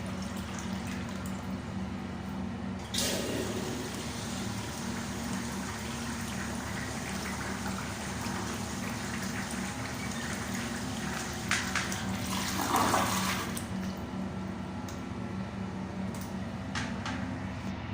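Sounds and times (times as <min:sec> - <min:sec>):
toilet flushing and refilling: 0:00.0 - 0:01.7, 0:02.8 - 0:13.8.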